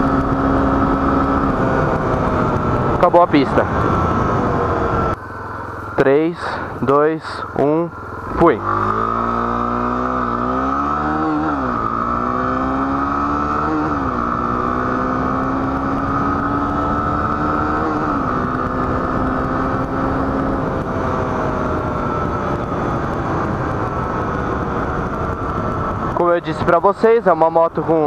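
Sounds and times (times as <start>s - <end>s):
motorcycle engine accelerating: 0.0s - 28.0s.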